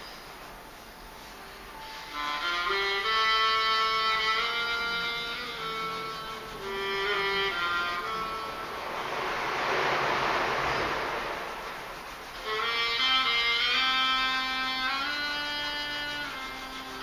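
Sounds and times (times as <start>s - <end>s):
solo violin slow melody: 1.5s - 9.3s, 12.3s - 17.0s
rushing noise: 4.6s - 17.0s.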